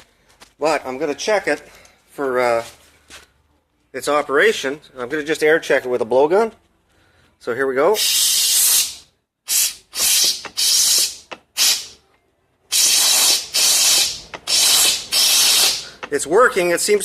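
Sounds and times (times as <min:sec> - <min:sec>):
air blowgun hissing blasts: 0:08.0 - 0:12.0, 0:12.7 - 0:16.7.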